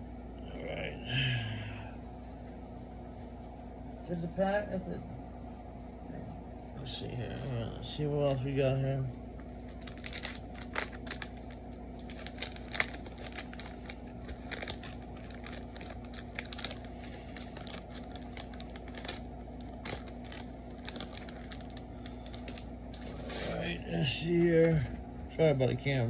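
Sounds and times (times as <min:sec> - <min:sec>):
low hum: 0:00.0 - 0:26.0
wrappers crinkling and tearing: 0:09.4 - 0:24.9.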